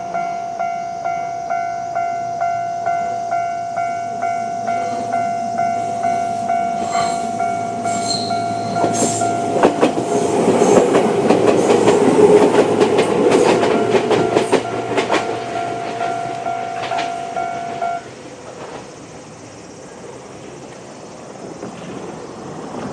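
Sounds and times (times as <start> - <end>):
level-crossing alarm tone: 0.0 - 18.1
train wheels clicking over rail joints: 3.7 - 22.9.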